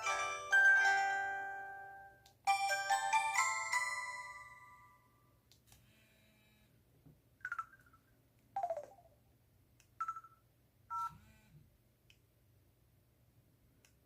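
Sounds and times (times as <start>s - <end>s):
phone electronic beeps: 8.6s - 9.0s, 10.0s - 11.2s.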